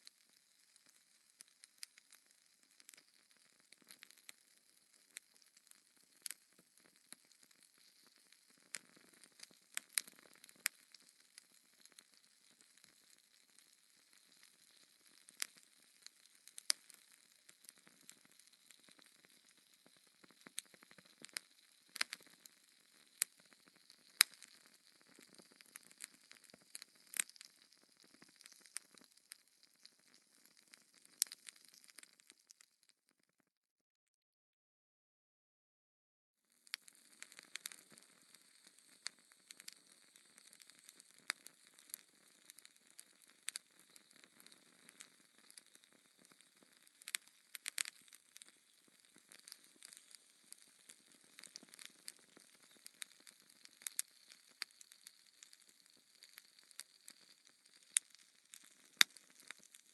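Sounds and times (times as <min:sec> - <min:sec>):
wood fire crackling: 0:00.0 - 0:32.8, 0:36.6 - 0:59.9.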